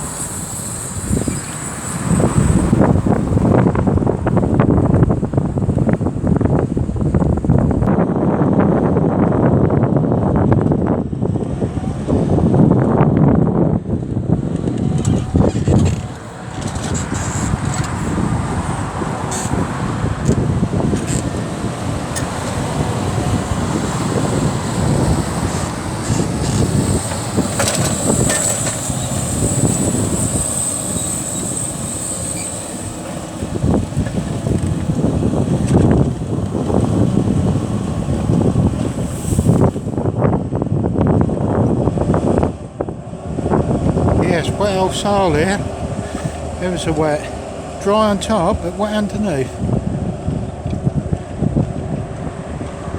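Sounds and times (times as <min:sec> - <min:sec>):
tractor engine running: 0:00.0 - 0:07.9, 0:13.6 - 0:40.1, 0:42.0 - 0:52.9
wind buffeting microphone: 0:00.0 - 0:52.9.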